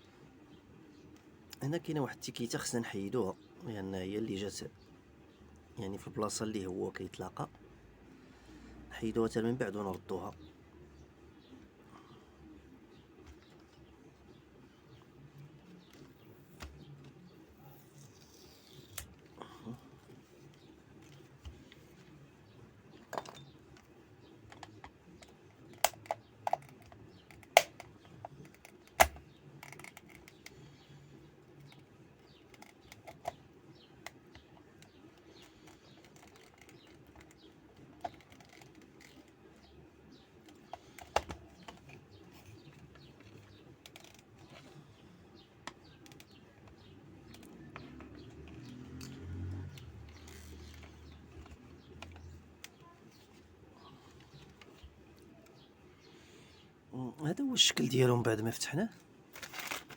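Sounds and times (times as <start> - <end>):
small plastic clicks: 24.5 - 30.9, 31.6 - 44.8
sharp plastic knocks: 40.5 - 41.9.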